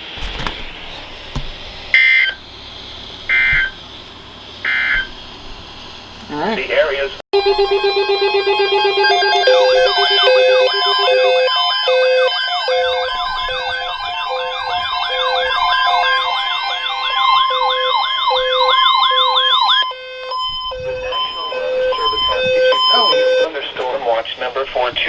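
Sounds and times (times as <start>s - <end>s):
regular beeps: 3.3s - 3.8s, 18.4s - 23.5s
siren-like warbles: 3.3s - 3.8s, 7.4s - 23.5s.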